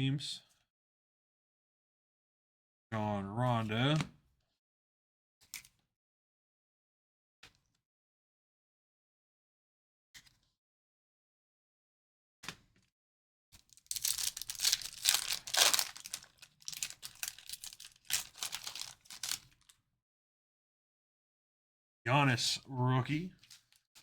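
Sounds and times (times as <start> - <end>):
wrappers tearing and crinkling: 13.7 - 19.7, 23.4 - 23.8.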